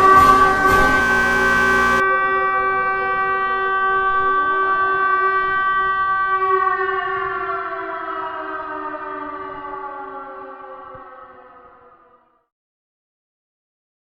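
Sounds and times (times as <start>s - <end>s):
siren wailing and winding down: 1.0s - 2.0s.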